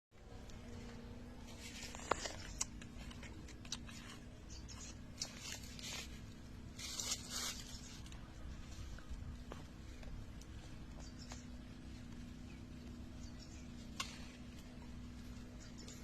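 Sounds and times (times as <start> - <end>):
rustling and crinkling: 0.2 - 13.0
faint hum: 0.2 - 16.0.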